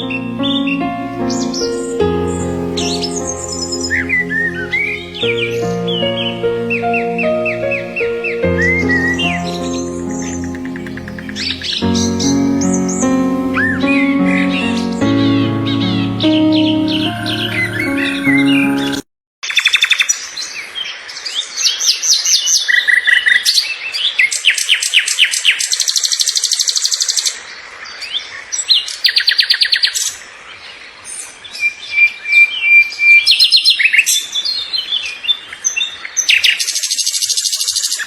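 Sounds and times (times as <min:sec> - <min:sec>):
birds trilling and chirping: 0:00.0 - 0:18.5.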